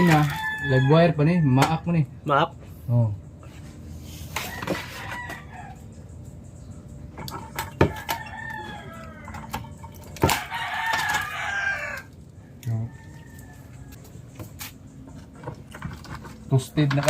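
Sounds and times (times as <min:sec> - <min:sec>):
rooster crowing: 0:00.0 - 0:01.8, 0:04.4 - 0:06.1, 0:07.7 - 0:14.3.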